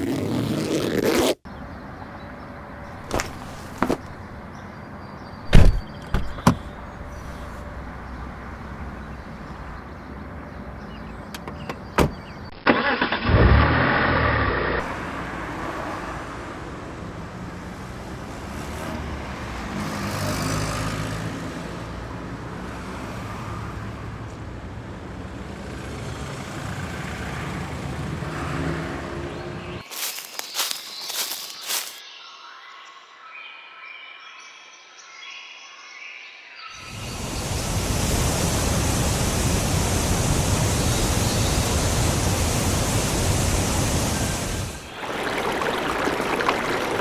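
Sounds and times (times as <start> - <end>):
sharp knocks: 5.5 - 6.8
car engine surging: 5.5 - 16.2.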